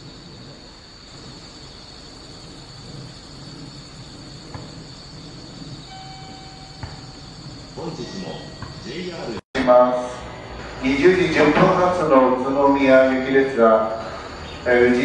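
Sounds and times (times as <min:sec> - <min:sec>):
low background rumble: 0:00.0 - 0:09.4
crickets trilling: 0:00.0 - 0:15.0
brief tone: 0:05.9 - 0:07.2, 0:08.0 - 0:08.9.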